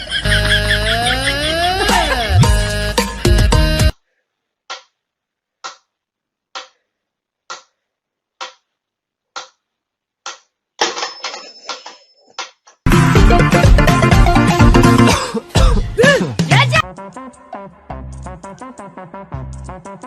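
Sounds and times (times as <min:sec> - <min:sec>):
loud music: 0:00.3 - 0:03.9, 0:12.9 - 0:20.0
rustling and clattering: 0:10.8 - 0:12.8.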